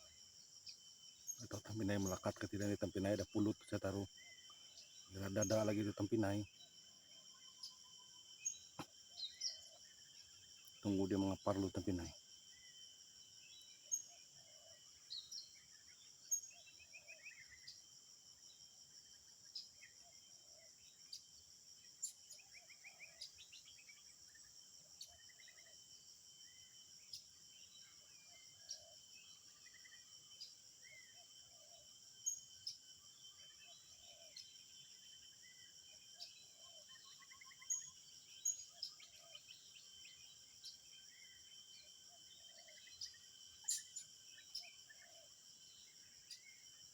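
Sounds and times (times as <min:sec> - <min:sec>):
bird chirps: 0:00.0 - 0:12.8, 0:33.4 - 0:46.7
insects droning: 0:00.0 - 0:46.9
small ticks: 0:10.6 - 0:10.8.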